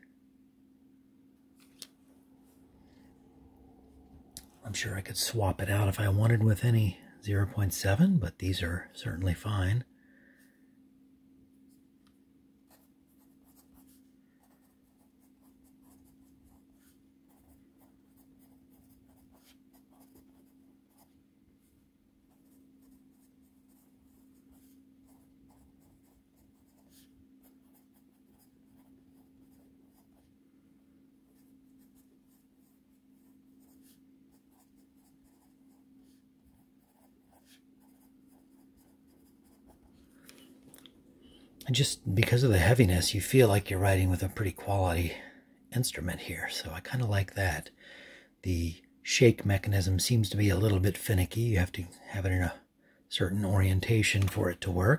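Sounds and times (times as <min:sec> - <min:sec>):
low steady hum: 0:00.0 - 0:54.9
pencil scratching on paper: 0:12.7 - 0:21.2, 0:22.3 - 0:30.3, 0:31.3 - 0:40.2.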